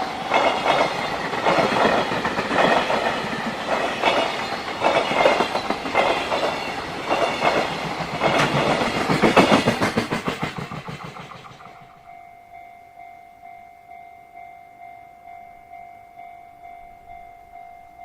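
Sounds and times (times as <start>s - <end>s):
level-crossing warning bell: 0.0s - 9.1s, 11.6s - 18.0s
train wagons clattering over rails: 0.0s - 12.0s.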